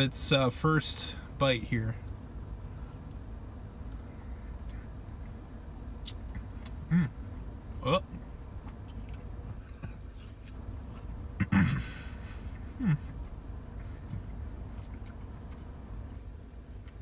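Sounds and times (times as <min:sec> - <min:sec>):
low steady background hum: 0:00.0 - 0:17.0
man chewing food: 0:03.8 - 0:17.0
man humming mm: 0:06.8 - 0:07.2, 0:12.8 - 0:13.2.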